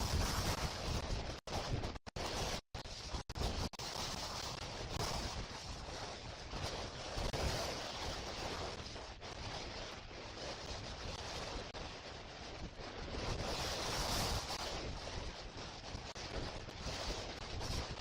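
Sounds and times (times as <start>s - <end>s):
strong wind gusting on microphone: 0.0s - 18.0s.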